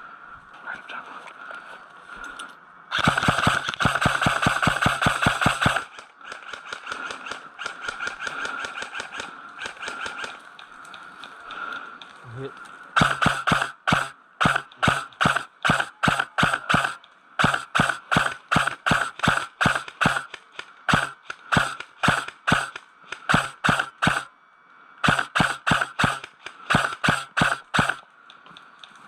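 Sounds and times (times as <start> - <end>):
airsoft gun shots: 2.9 - 10.4, 13.0 - 24.3, 25.0 - 28.0.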